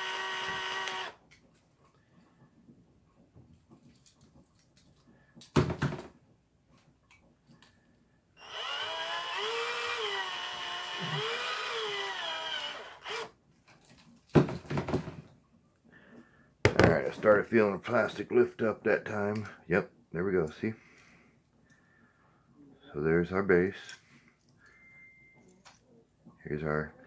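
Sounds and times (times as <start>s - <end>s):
electric drill drilling metal: 0.0s - 1.2s, 8.4s - 13.4s
knocks and clatter: 14.3s - 15.3s.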